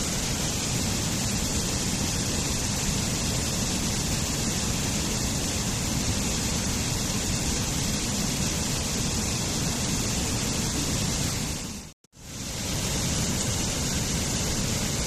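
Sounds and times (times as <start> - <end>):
waterfall rushing: 0.0 - 15.0.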